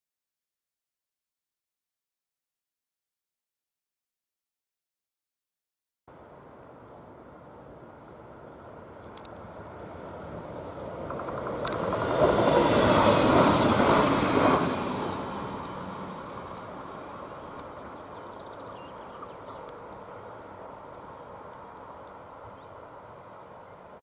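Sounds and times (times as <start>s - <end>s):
locomotive passing: 6.2s - 24.0s.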